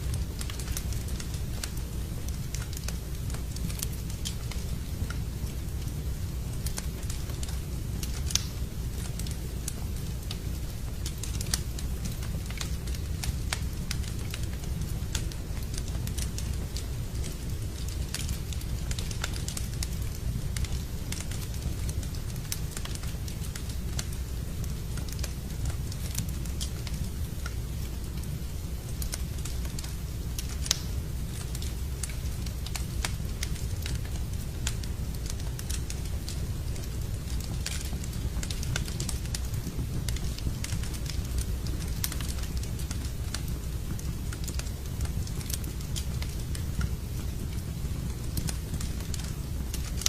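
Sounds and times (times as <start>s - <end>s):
low rumble of flames: 0.0s - 50.0s
wood fire crackling and popping: 0.0s - 50.0s.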